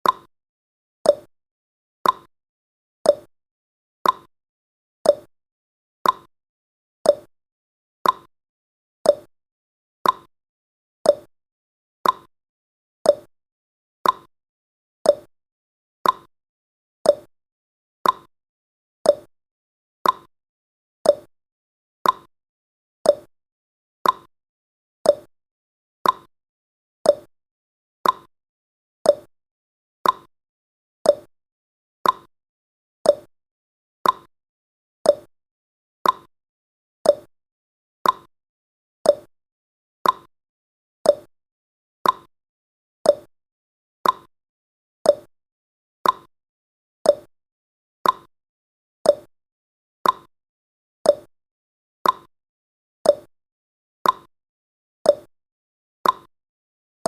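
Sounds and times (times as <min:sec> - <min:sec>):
clock ticking: 0:34.0 - 0:34.3, 0:40.0 - 0:40.3, 0:42.0 - 0:42.3, 0:44.0 - 0:44.3.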